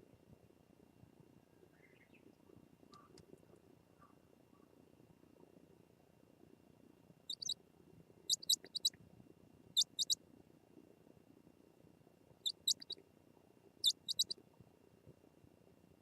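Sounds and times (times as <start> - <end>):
faint low background: 0.0 - 16.0
high-pitched bird chirps: 7.3 - 7.6, 8.3 - 8.9, 9.8 - 10.2, 12.4 - 13.0, 13.8 - 14.4.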